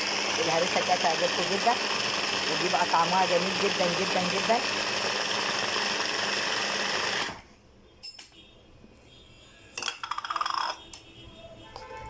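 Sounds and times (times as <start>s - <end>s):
electric food processor chopping: 0.0s - 7.4s.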